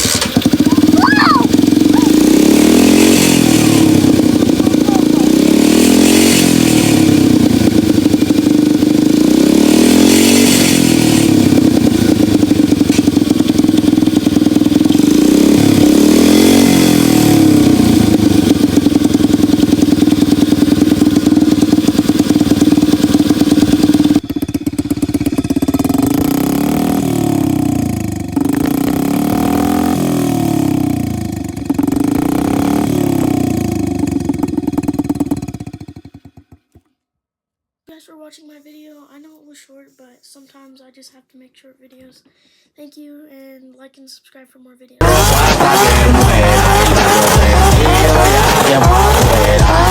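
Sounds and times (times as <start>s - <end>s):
dirt bike engine revving: 0.0s - 36.6s, 45.0s - 49.9s.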